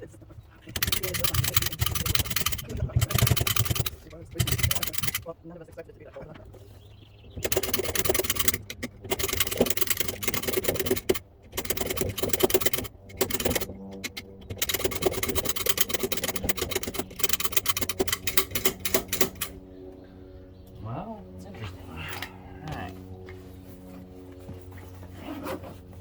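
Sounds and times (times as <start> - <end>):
lock tool rattling against pins: 0.6 - 5.3, 7.4 - 19.6.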